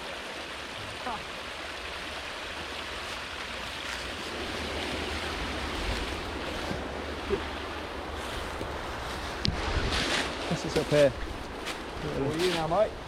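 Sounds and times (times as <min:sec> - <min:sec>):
waterfall and stream rushing: 0:00.0 - 0:13.0
wind rumble on microphone: 0:04.1 - 0:12.2.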